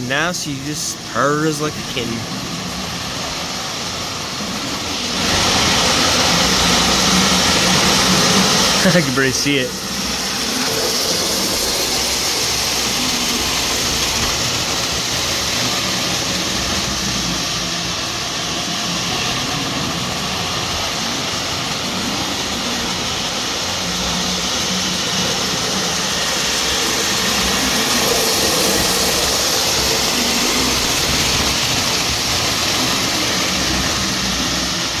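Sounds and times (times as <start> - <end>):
wheels rolling on rails: 1.8 - 9.1, 9.7 - 35.0
model train motor whirring: 2.3 - 35.0.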